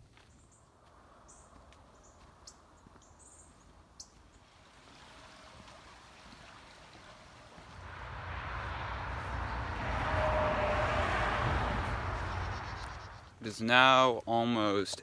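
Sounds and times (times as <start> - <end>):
high bird chirps: 11.6 - 13.4.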